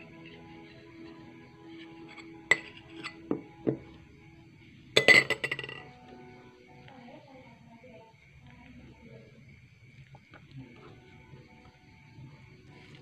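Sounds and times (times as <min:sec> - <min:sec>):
background music: 0:00.0 - 0:08.3, 0:10.4 - 0:13.0
spoon clinking against glass: 0:02.0 - 0:03.8, 0:05.0 - 0:05.9.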